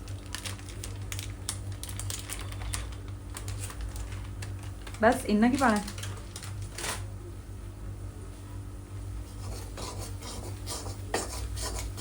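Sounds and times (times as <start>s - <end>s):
steady low hum: 0.0s - 12.0s
ladle scraping a pan: 9.3s - 12.0s.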